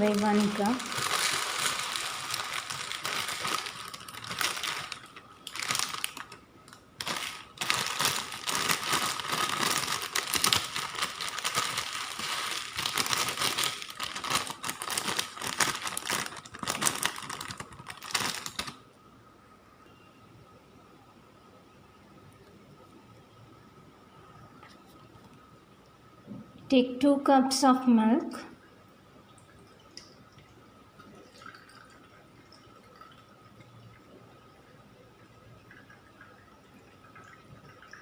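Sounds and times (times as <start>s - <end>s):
dry vermicelli crackling: 0.0s - 18.8s
plastic packet crinkling: 0.0s - 18.8s.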